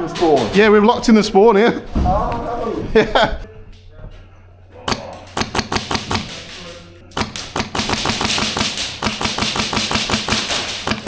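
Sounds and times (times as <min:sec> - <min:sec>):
airsoft gunfire: 0:04.9 - 0:11.0.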